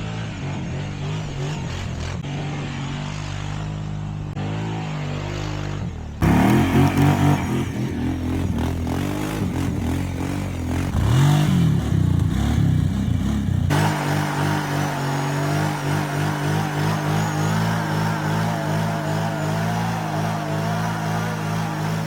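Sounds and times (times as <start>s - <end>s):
atv engine revving: 4.4s - 22.0s.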